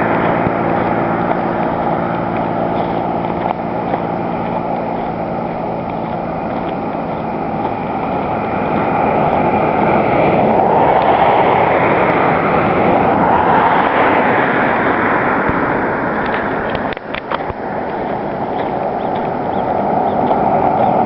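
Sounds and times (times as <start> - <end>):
broad rushing noise: 0.0 - 21.0
engine running steadily: 0.0 - 21.0.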